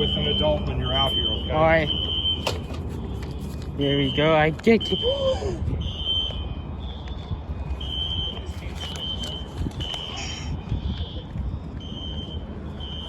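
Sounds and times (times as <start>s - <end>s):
fire alarm beeping: 0.0s - 2.6s, 5.8s - 13.0s.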